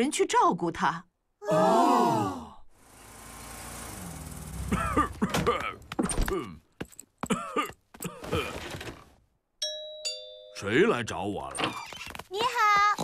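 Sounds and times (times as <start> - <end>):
cartoon character coughing: 4.7 - 6.6, 7.2 - 8.6.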